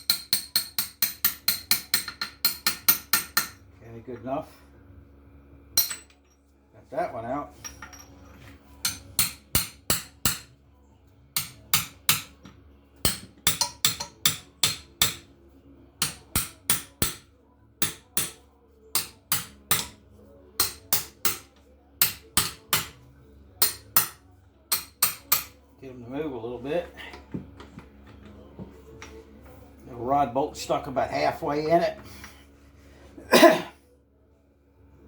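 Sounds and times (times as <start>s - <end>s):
hammer striking steel: 0.0s - 3.6s, 5.8s - 6.2s, 8.8s - 10.5s, 11.4s - 12.4s, 13.0s - 15.3s, 16.0s - 18.4s, 19.0s - 20.0s, 20.6s - 23.0s, 23.6s - 25.5s.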